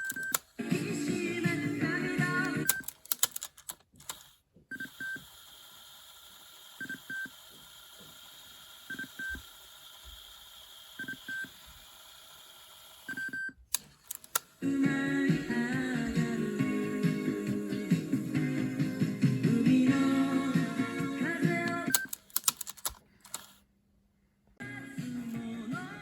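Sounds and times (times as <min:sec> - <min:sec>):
song from cassette: 0:00.0 - 0:05.4, 0:13.2 - 0:23.6, 0:24.6 - 0:26.0.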